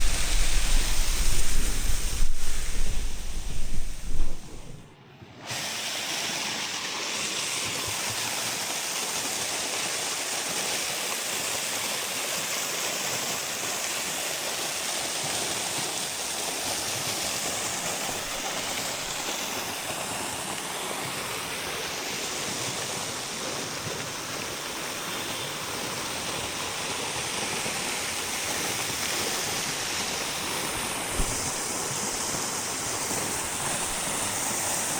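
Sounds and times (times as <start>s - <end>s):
waterfall roaring: 0.0s - 4.8s, 28.3s - 34.9s
heavy low rumble: 0.0s - 4.9s.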